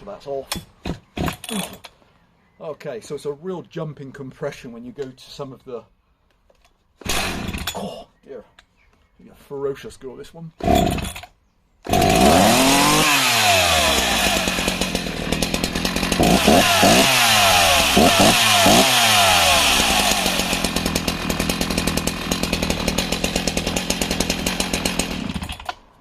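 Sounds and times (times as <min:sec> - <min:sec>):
chainsaw revving: 0:07.0 - 0:07.8, 0:10.6 - 0:26.0.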